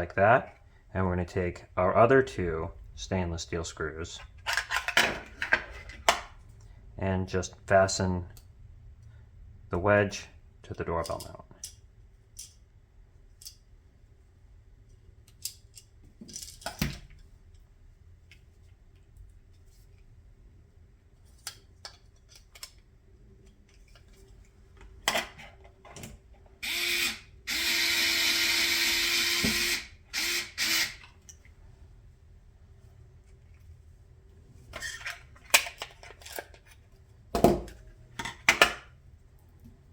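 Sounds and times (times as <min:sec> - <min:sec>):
clicks of small parts handled: 0:13.4 - 0:13.6
electric drill driving screws: 0:26.6 - 0:31.0.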